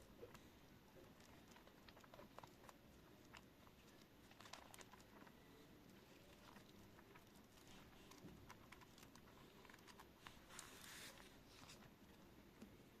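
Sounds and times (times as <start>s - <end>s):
soft handling ticks: 0.0s - 12.8s
thin paper pages rustling: 6.3s - 11.9s.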